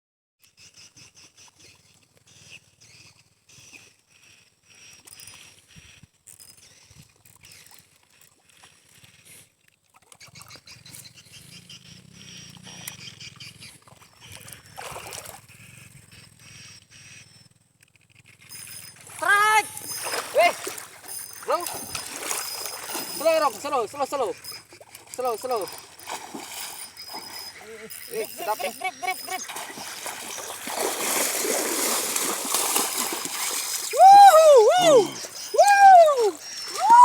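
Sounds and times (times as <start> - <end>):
animal chirps and trills: 18.1 - 30.7, 33.4 - 37.0.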